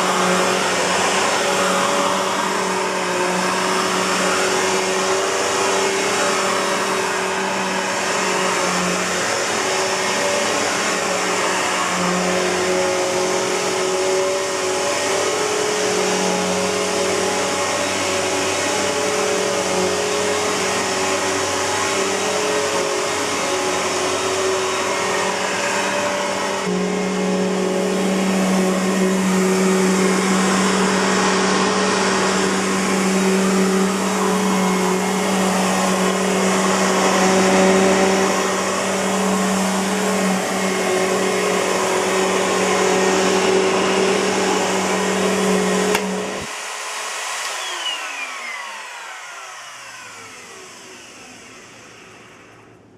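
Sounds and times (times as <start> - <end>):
upright vacuum cleaner running: 0.0 - 52.9.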